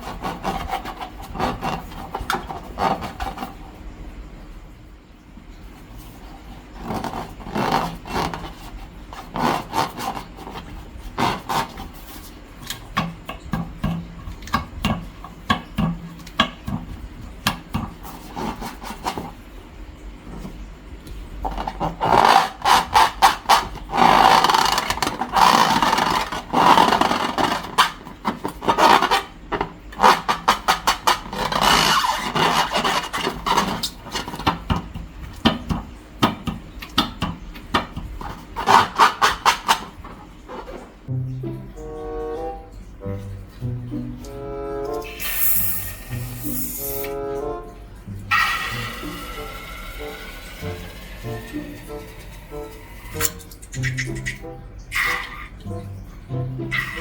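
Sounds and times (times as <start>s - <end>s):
hands rubbing balloons and slime: 0.0s - 3.8s, 6.0s - 13.0s, 17.4s - 19.4s, 21.4s - 34.6s.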